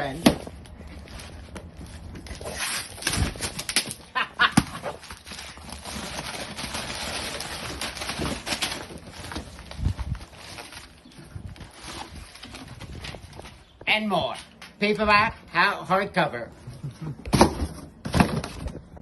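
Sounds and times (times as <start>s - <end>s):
cardboard scraping and tearing: 0.0s - 4.0s, 4.6s - 13.4s.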